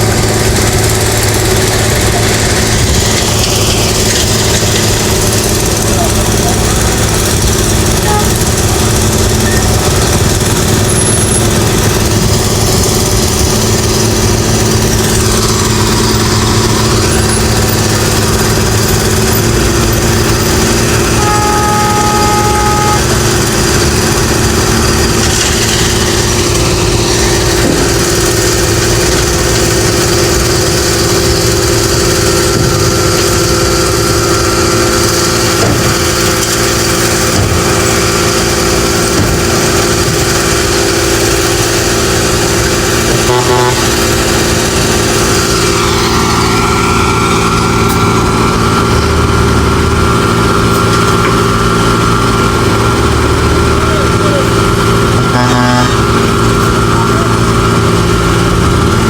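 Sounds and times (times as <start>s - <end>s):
construction machinery engines running: 0.0s - 59.0s
higher two-pitch tone: 21.2s - 23.4s.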